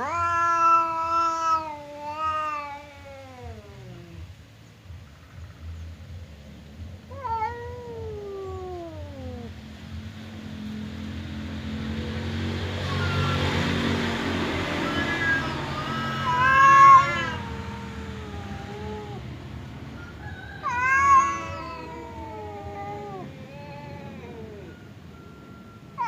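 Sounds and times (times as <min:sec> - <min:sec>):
cat growling: 0:00.0 - 0:04.3, 0:07.1 - 0:09.6, 0:11.8 - 0:19.4, 0:20.6 - 0:24.9
cats yowling: 0:00.0 - 0:04.3, 0:07.0 - 0:09.6, 0:11.4 - 0:26.0.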